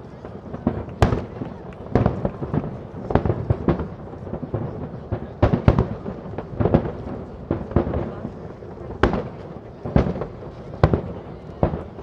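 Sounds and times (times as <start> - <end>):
fireworks bursting: 0.3 - 8.1.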